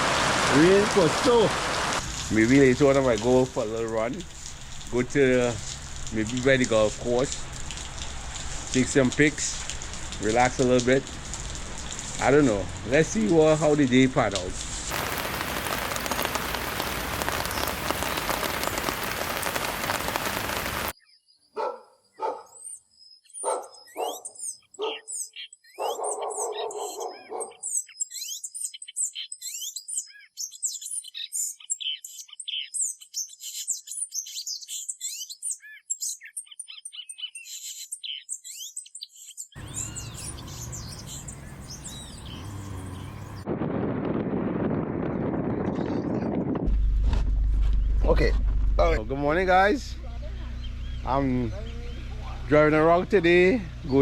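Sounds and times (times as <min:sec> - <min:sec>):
steady rain: 0:00.0 - 0:20.9, 0:39.6 - 0:43.5
birds chirping and calling: 0:15.7 - 0:43.4, 0:48.8 - 0:54.0.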